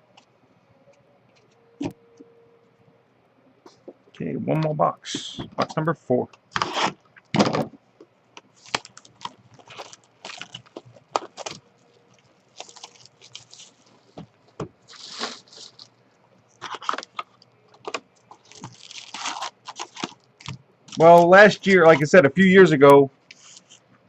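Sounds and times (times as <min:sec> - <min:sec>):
card packs rustling: 0:08.5 - 0:15.9, 0:16.5 - 0:22.7.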